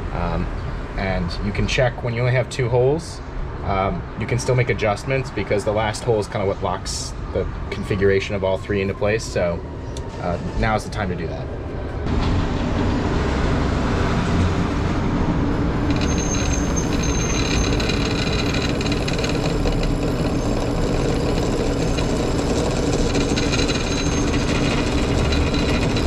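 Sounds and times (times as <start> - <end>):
drill press motor running: 15.6 - 26.0
drill bit whining into metal: 15.7 - 26.0.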